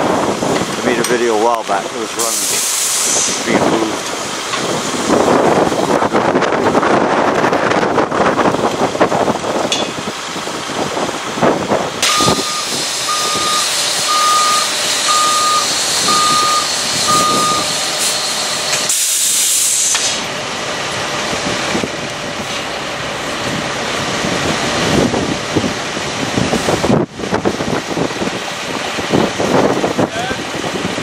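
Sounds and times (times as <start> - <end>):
heavy machine running: 0.0 - 31.0
sharp air hiss: 2.2 - 3.6, 12.0 - 20.3
reversing alarm beeping: 12.0 - 18.8.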